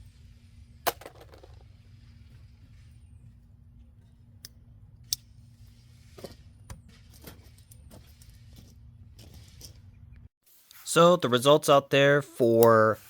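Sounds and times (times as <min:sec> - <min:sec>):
steady low hum: 0:00.0 - 0:10.3.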